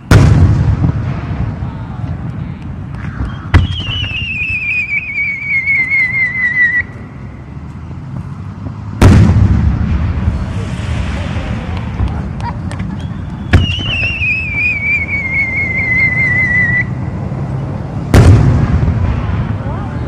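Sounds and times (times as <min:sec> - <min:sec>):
firework bang: 0:00.0 - 0:02.2, 0:02.9 - 0:05.4, 0:09.0 - 0:15.4, 0:18.1 - 0:19.8
firework boom: 0:00.0 - 0:02.3, 0:03.1 - 0:04.6, 0:09.0 - 0:14.7, 0:18.1 - 0:19.8
rumble of firework burst: 0:00.0 - 0:05.1, 0:09.0 - 0:15.5, 0:18.1 - 0:20.0
firework whistle falling in pitch: 0:03.2 - 0:07.0, 0:13.4 - 0:16.9.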